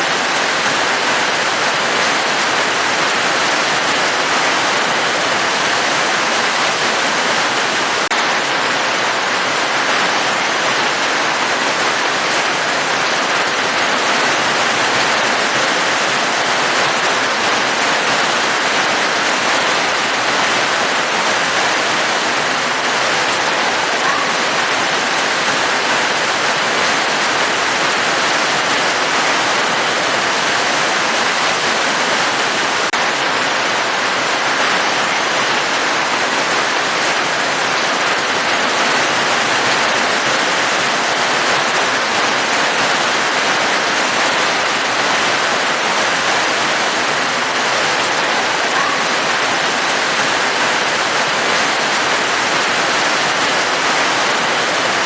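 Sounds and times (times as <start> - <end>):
steady heavy rain: 0.0 - 55.0.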